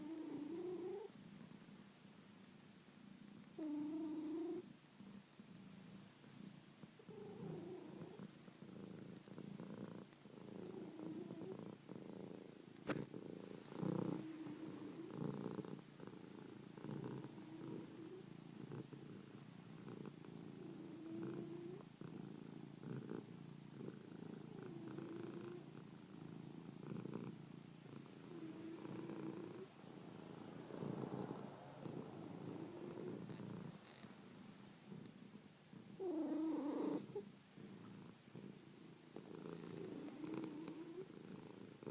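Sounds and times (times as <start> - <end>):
cat purring: 0.0 - 41.9.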